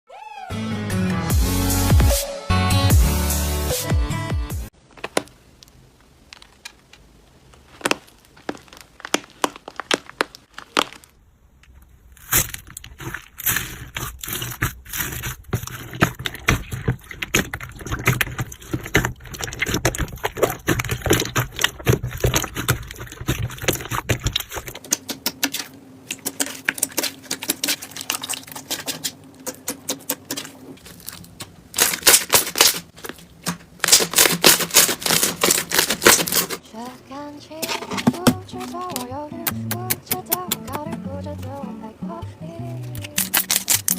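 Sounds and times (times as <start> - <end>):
slime crackling and popping: 5.0 - 36.6, 42.9 - 43.9.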